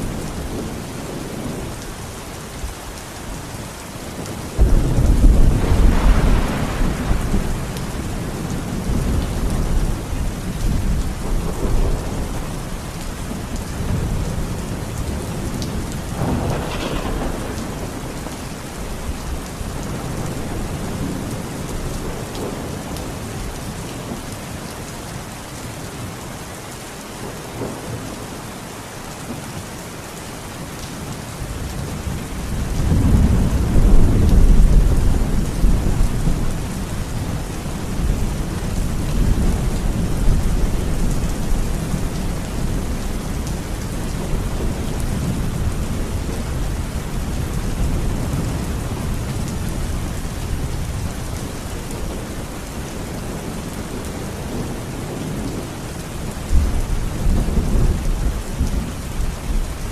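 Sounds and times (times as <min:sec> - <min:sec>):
heavy rain falling: 0:00.0 - 0:59.9
thunder rumbling: 0:04.1 - 0:23.3, 0:31.5 - 0:55.7.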